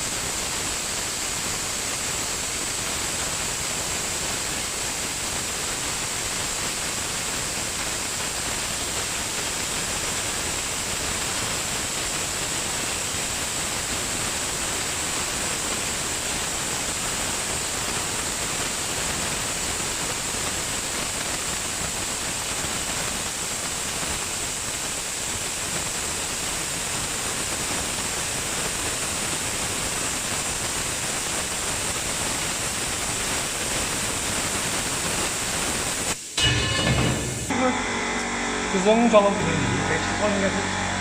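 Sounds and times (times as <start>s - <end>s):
cutting torch hissing: 0.0s - 36.5s, 37.1s - 41.0s.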